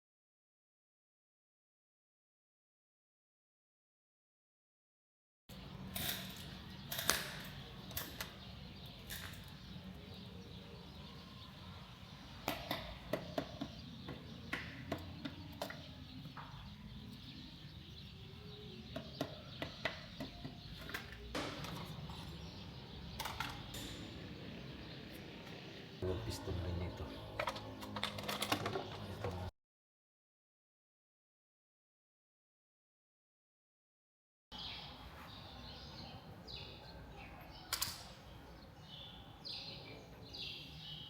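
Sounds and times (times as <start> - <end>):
steady low hum: 23.9 - 27.7.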